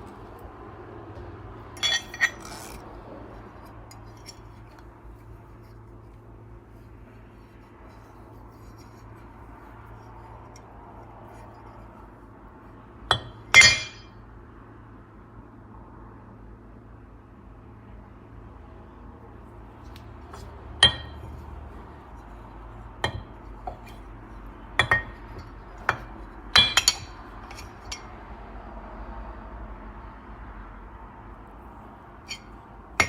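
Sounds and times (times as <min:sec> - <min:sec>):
metal or glass objects clinking: 0:01.8 - 0:02.6, 0:13.1 - 0:14.1, 0:20.8 - 0:21.3, 0:26.6 - 0:28.1.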